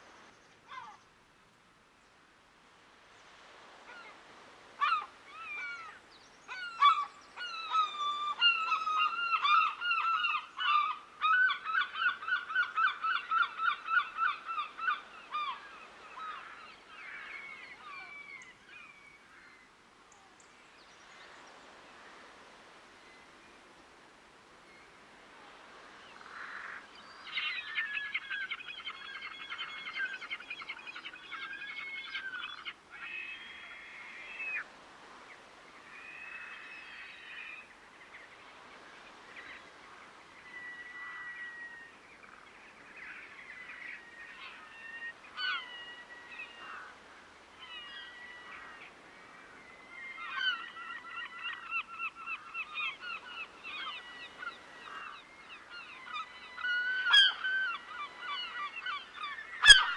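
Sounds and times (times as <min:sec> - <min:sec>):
waterbirds honking: 0:56.1 - 0:59.9.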